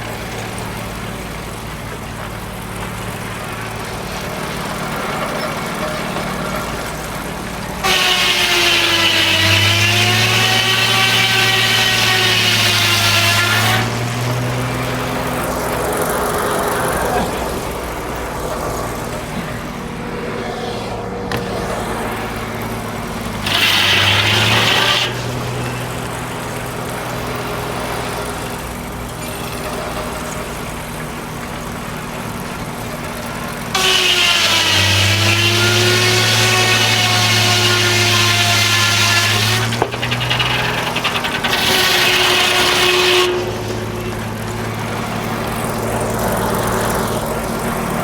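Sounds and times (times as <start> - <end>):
saw blade whining through log: 0.0 - 48.0
sawmill engine running: 0.0 - 48.0.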